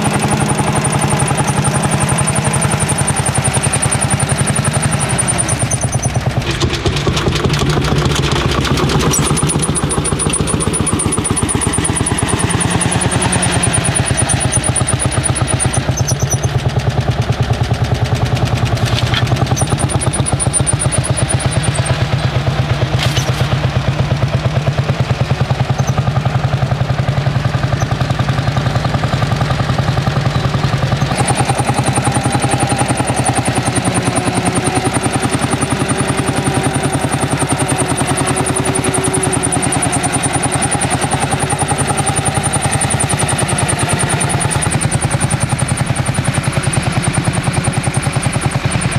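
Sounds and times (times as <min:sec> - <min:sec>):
tractor engine chugging: 0:00.0 - 0:48.9.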